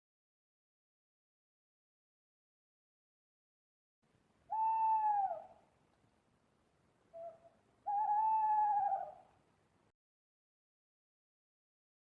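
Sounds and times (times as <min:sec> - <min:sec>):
owl hooting: 0:04.5 - 0:05.6, 0:07.1 - 0:09.3.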